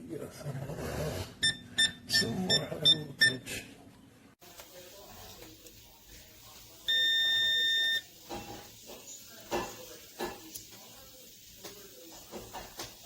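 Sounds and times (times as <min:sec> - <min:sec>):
multimeter high beep: 0:01.4 - 0:03.4, 0:06.9 - 0:08.0.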